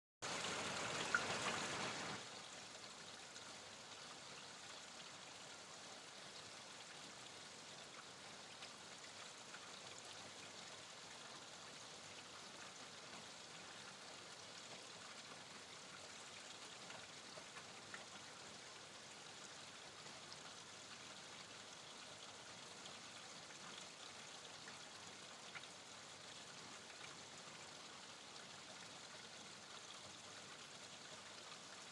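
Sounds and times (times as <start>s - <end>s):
rain hissing: 0.2s - 2.3s.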